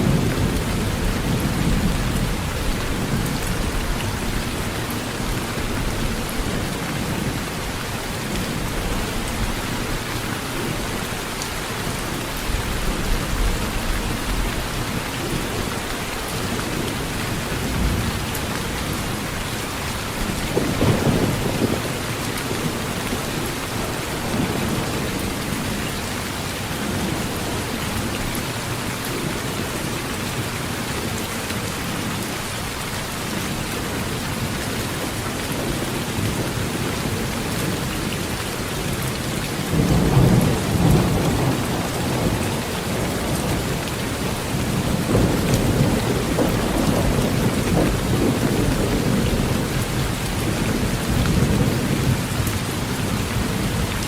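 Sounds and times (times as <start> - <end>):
heavy rain on a tin roof: 0.0 - 54.0
low thunder rumbling: 20.2 - 25.7, 39.7 - 54.0.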